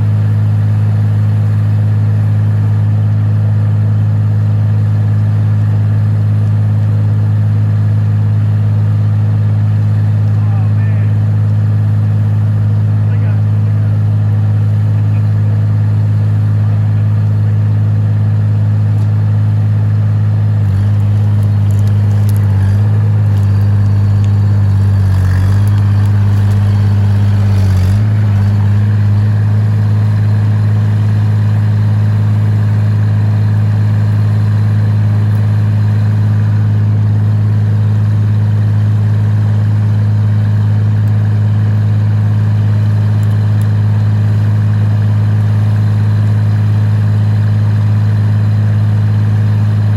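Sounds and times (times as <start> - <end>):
excavator diesel engine running: 0.0 - 49.9
machinery clatter: 20.6 - 29.7.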